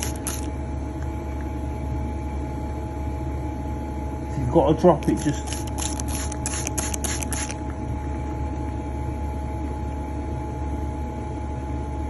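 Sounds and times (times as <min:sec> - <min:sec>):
rapid pulsing hiss: 0:00.0 - 0:00.5, 0:05.0 - 0:07.6
vacuum pump humming: 0:00.0 - 0:11.4.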